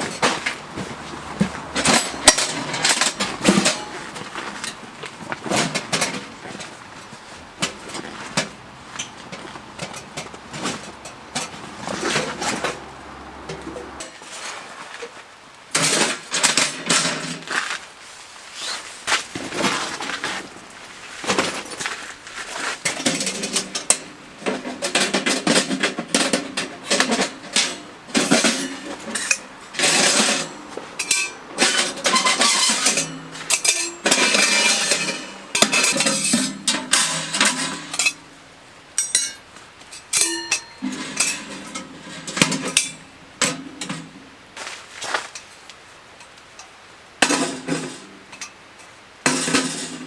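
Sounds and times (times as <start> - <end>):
metal camping gear clinking: 0.0 - 14.4, 18.6 - 50.0.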